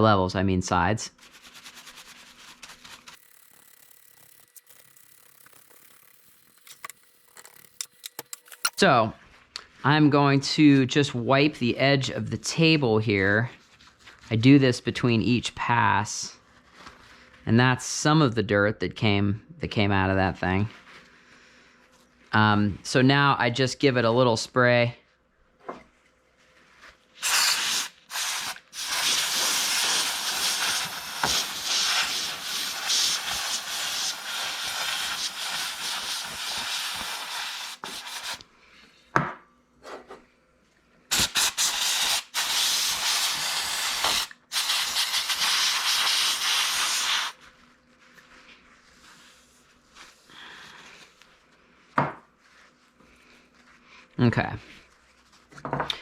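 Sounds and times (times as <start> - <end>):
brush scrubbing: 1.2 - 3.2, 28.2 - 38.4, 51.7 - 54.1.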